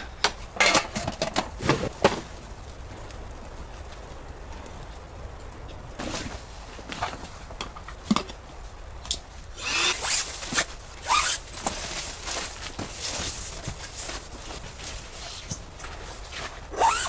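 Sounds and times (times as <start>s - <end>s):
clicks and rustles: 0.0s - 17.0s
zipper pulled: 9.6s - 11.8s, 16.2s - 17.0s.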